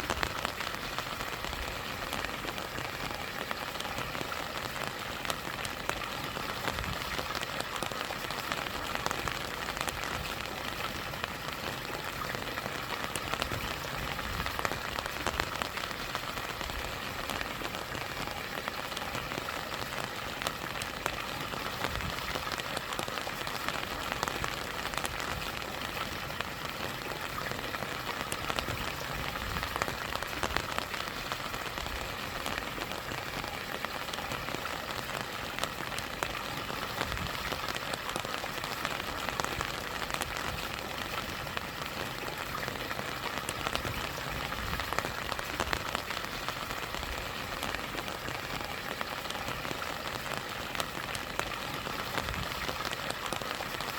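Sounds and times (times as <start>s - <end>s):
rain drops ticking: 0.0s - 53.9s
stream water over small waterfall: 0.0s - 53.9s.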